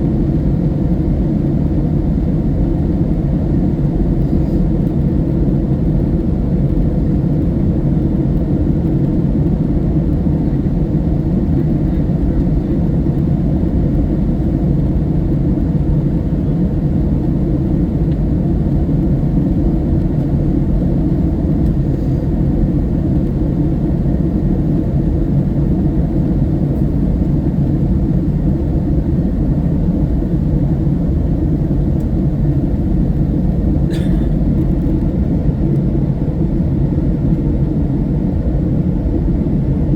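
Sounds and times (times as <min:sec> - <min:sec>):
airplane cabin engine rumble: 0:00.0 - 0:39.9.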